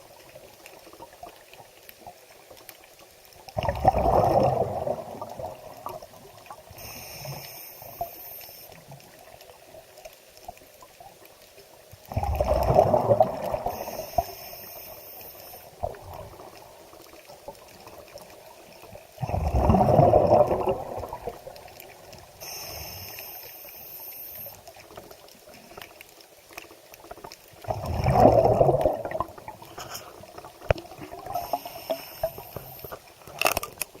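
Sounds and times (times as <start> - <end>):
faint high hiss: 5.8 - 9.4, 13.4 - 15.9, 21.7 - 27.0, 29.6 - 33.3
water surging: 27.1 - 34.0.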